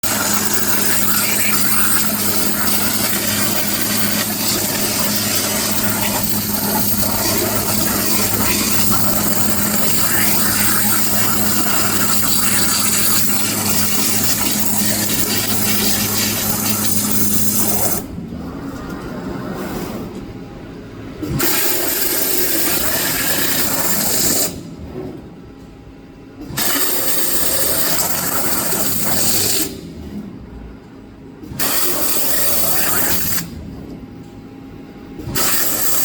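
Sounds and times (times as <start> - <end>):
high-pressure water jet hissing: 0.0 - 18.0
low machine hum: 0.0 - 26.5, 27.3 - 31.6, 33.4 - 35.3.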